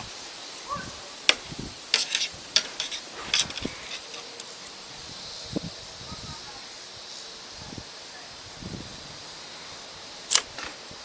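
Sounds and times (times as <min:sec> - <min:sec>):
foam grip scraping and clicking: 0:10.3 - 0:10.8.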